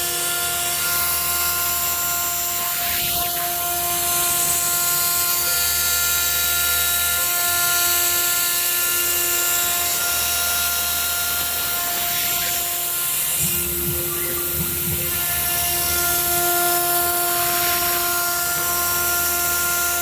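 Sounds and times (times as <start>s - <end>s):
router spindle whine: 0.0s - 20.0s
low hum: 13.2s - 18.8s.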